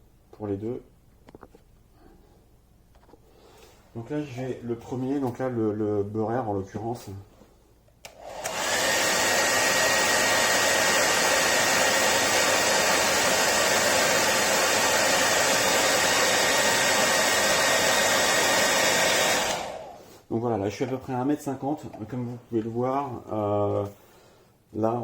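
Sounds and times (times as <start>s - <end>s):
hair dryer switch click: 8.0s - 9.0s
hair dryer running: 8.0s - 20.1s.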